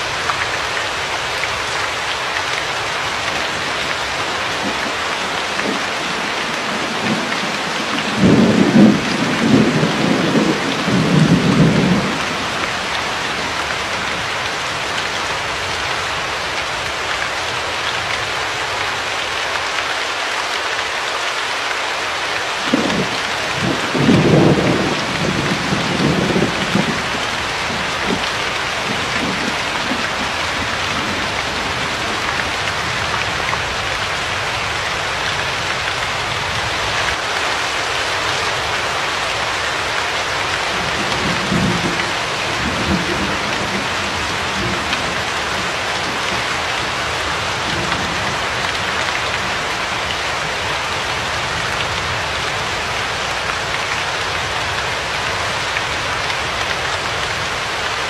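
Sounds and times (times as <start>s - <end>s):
steady rain: 0.0s - 58.0s
thunder rumbling: 3.5s - 13.6s, 22.7s - 34.7s, 40.6s - 50.7s.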